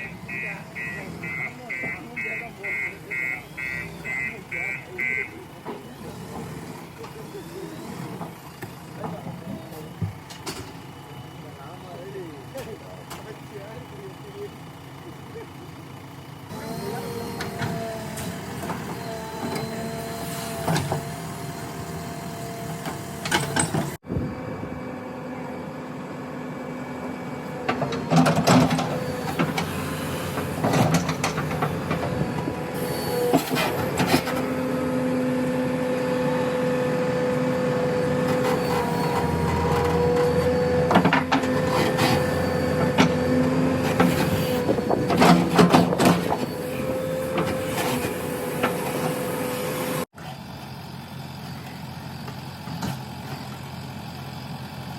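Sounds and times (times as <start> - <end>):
diesel engine whining under load: 0.0 - 54.9.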